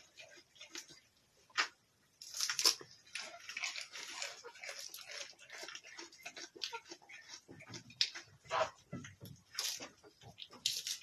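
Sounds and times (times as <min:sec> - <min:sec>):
goats crunching: 0:00.0 - 0:11.0
goats rustling leaves: 0:02.2 - 0:07.7.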